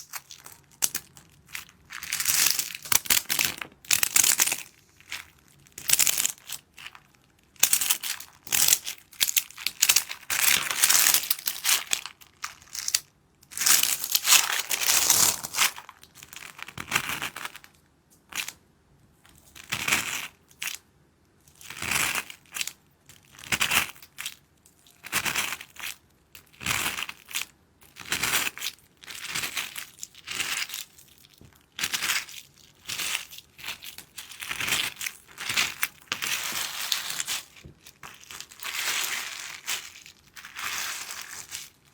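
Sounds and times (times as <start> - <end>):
water beads crunching and squishing: 0.0 - 16.2, 31.8 - 41.9.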